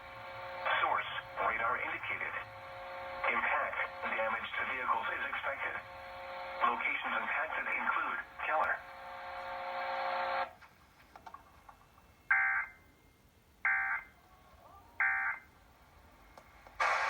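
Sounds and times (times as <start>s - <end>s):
steady buzz: 0.0s - 10.6s.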